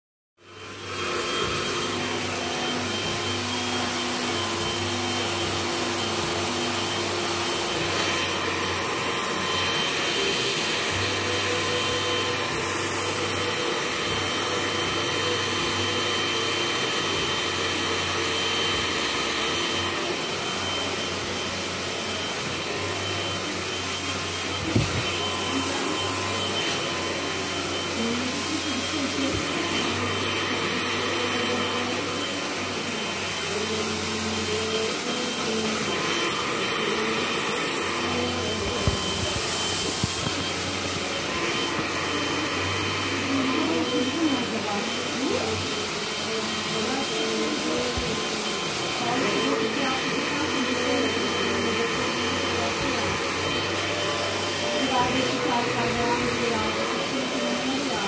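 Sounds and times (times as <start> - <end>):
hair dryer running: 0.4 - 58.0.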